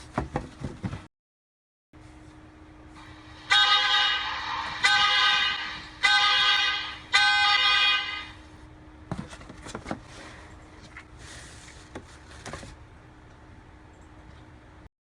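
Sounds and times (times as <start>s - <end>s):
horn toots: 3.4s - 8.4s.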